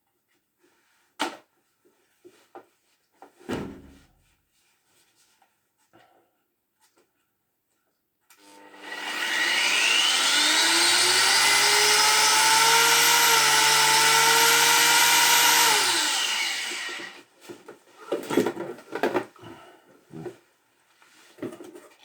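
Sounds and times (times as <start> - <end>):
angle grinder motor whine: 8.4 - 17.2.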